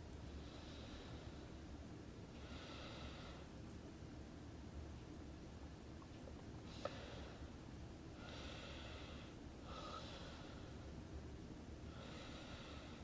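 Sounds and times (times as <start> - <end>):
low steady hum: 0.0 - 13.0
person breathing: 0.2 - 1.7, 2.3 - 3.6, 6.6 - 11.0, 11.8 - 13.0.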